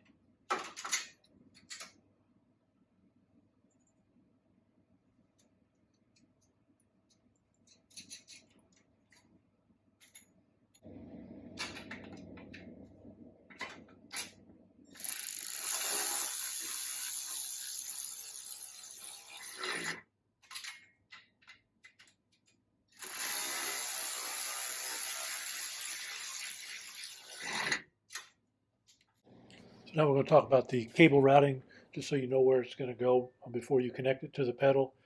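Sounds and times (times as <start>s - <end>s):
ratchet wrench clicking: 15.0s - 19.4s.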